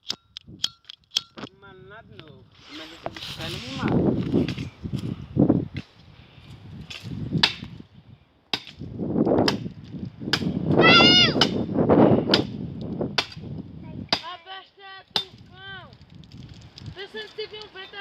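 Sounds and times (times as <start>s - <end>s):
axe chopping wood: 6.9s - 7.7s, 8.5s - 8.8s, 10.3s - 10.5s, 12.3s - 12.5s, 13.2s - 13.4s, 14.1s - 14.3s.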